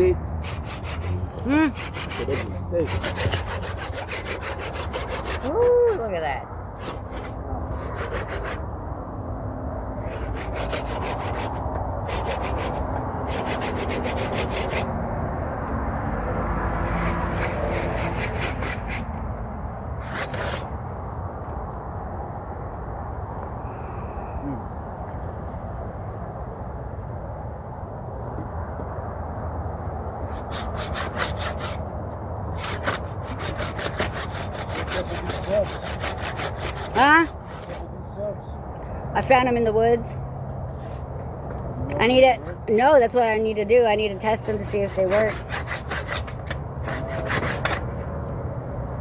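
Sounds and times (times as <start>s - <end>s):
saw cutting wood: 0.0s - 8.7s, 10.0s - 14.9s, 16.8s - 19.2s, 20.0s - 20.7s, 30.3s - 38.3s, 41.9s - 48.1s
insects buzzing: 0.0s - 49.0s.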